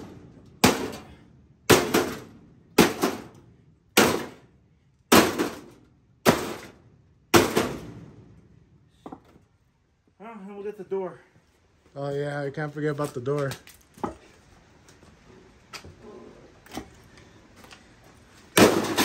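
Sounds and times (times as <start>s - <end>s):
heavy blows smashing metal parts: 0.0s - 4.5s, 5.1s - 8.2s, 18.5s - 19.0s.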